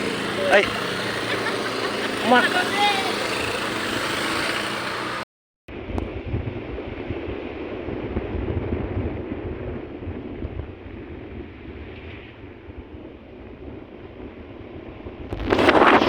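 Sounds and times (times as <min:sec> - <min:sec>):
vehicle running on road: 0:00.0 - 0:06.6
wind noise on microphone: 0:05.7 - 0:16.0.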